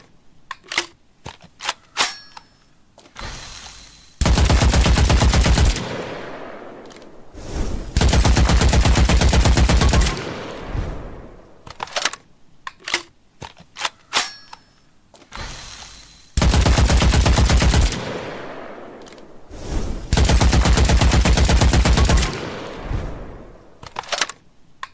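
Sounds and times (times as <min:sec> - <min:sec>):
machine gun automatic fire: 0:04.2 - 0:06.3, 0:07.9 - 0:10.6, 0:16.4 - 0:18.4, 0:20.1 - 0:22.8.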